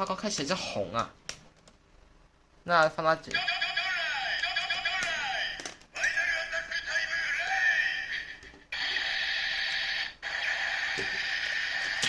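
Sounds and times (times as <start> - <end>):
toy electronic sound effects: 3.3 - 12.0.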